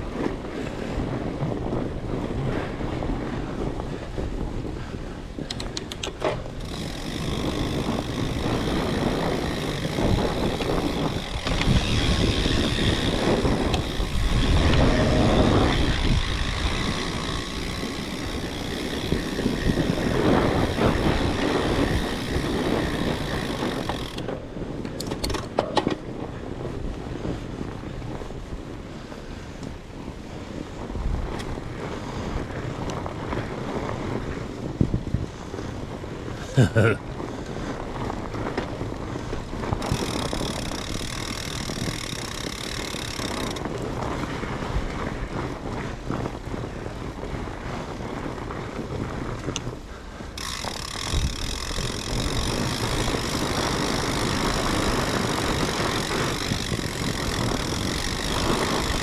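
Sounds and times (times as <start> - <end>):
bike tyres rumbling on trail: 0.0 - 59.0
wind buffeting microphone: 0.0 - 59.0
sharp clicks: 5.4 - 6.8.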